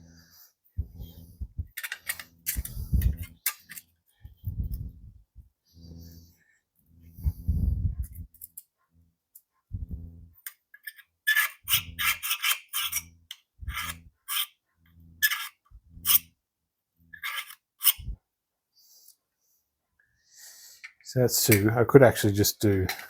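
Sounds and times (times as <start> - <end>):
scriber scratching steel: 1.0 - 4.0, 10.0 - 16.3, 17.0 - 18.2.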